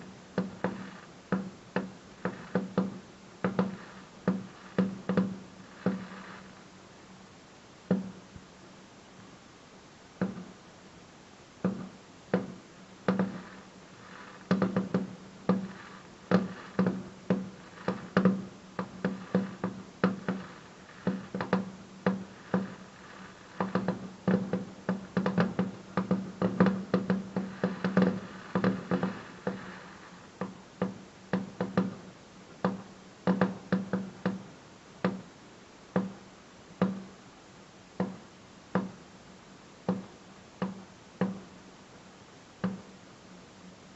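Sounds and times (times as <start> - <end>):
fireworks bangs and crackle: 0.0 - 6.7, 11.6 - 34.6.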